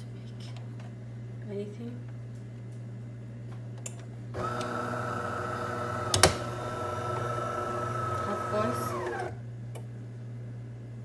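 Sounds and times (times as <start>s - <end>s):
coffee machine motor whine: 4.3s - 9.4s
sharp clicks: 6.0s - 6.8s.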